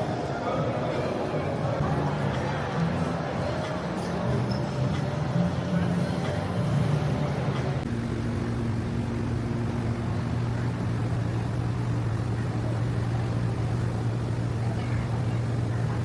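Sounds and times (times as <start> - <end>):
low engine drone: 5.2 - 16.0.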